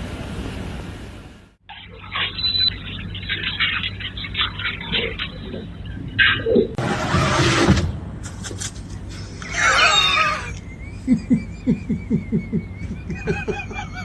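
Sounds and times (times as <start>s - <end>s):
dog whining: 9.4s - 10.6s.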